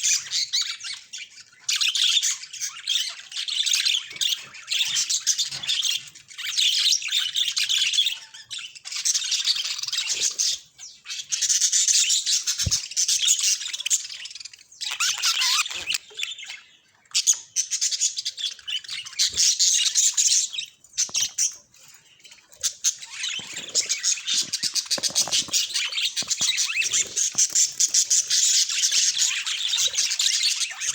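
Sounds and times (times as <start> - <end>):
budgerigar warbling and chattering: 14.8 - 16.1.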